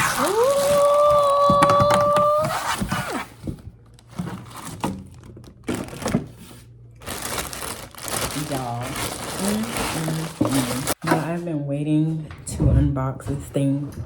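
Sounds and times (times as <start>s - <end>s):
packaging crinkling and tearing: 0.0s - 1.6s, 3.9s - 11.0s
high-pitched held cry: 0.0s - 2.7s.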